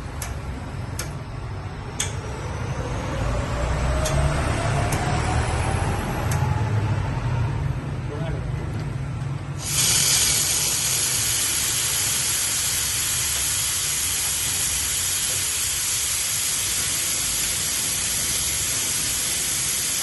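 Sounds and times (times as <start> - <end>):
espresso steam wand hissing: 9.6 - 20.0.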